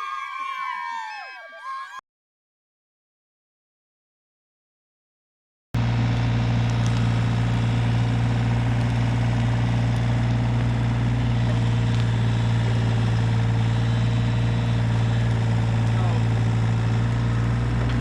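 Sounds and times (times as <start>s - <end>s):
diesel engine idling: 5.8s - 18.0s.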